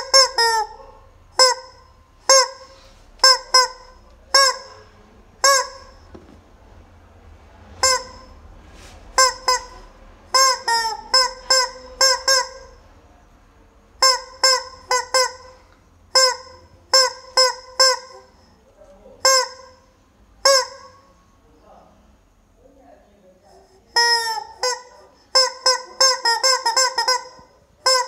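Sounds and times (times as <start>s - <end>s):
rubber chicken toy squawking: 0.0s - 6.1s, 7.8s - 8.3s, 9.2s - 12.8s, 14.0s - 18.5s, 19.2s - 19.8s, 20.4s - 21.1s, 23.9s - 28.0s.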